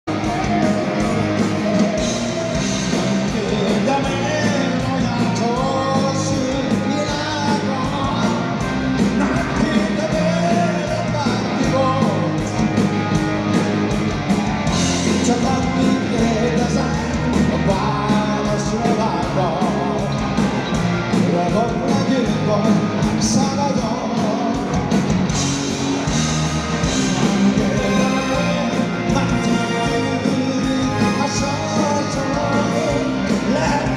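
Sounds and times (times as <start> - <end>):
bass guitar: 0.0 - 33.9
distorted electric guitar: 0.0 - 33.9
drums: 0.0 - 33.9
person singing: 0.1 - 12.7, 15.0 - 20.4, 26.7 - 33.9.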